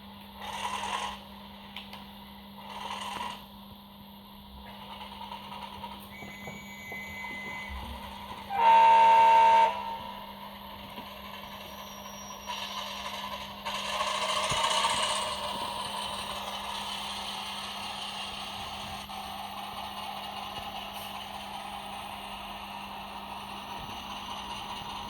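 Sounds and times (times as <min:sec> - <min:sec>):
diesel engine sound: 0:04.5 - 0:25.0
locomotive horn blast: 0:08.5 - 0:10.4.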